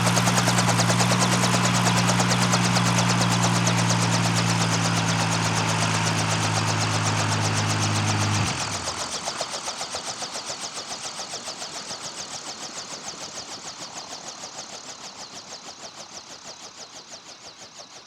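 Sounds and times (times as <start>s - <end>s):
helicopter rotor blades winding down: 0.0s - 10.2s.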